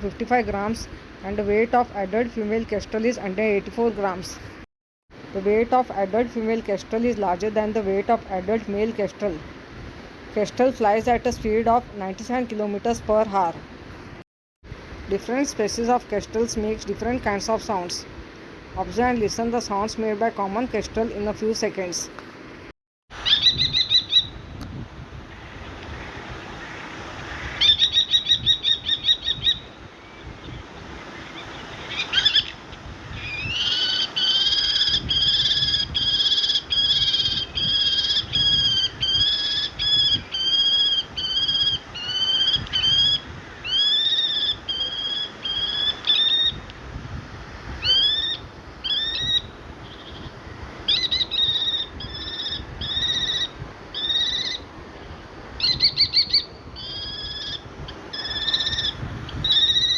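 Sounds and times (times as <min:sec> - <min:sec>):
kestrel calling: 0:23.2 - 0:24.4, 0:27.6 - 0:29.8, 0:31.2 - 0:46.7, 0:47.8 - 0:54.6, 0:55.6 - 0:59.9.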